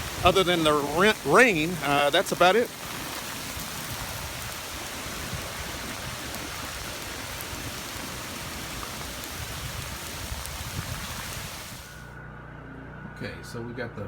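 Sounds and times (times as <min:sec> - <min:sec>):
wind rumble on microphone: 0:00.0 - 0:01.8, 0:02.7 - 0:11.9
heavy rain falling: 0:00.0 - 0:12.0.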